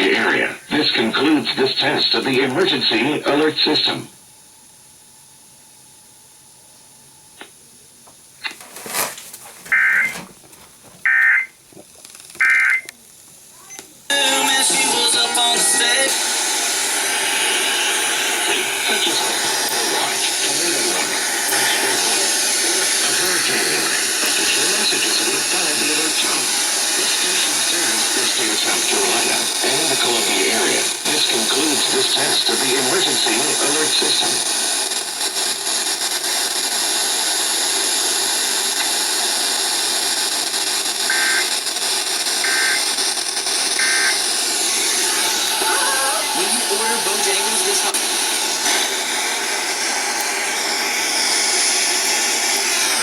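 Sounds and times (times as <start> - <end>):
radio static hiss: 0.0 - 4.3, 7.3 - 53.0
faint radio programme audio: 0.0 - 4.4, 6.8 - 37.0, 38.6 - 53.0
shrill digital data bursts: 9.7 - 10.2, 12.4 - 12.8, 41.0 - 41.7, 42.4 - 43.0, 43.8 - 48.6.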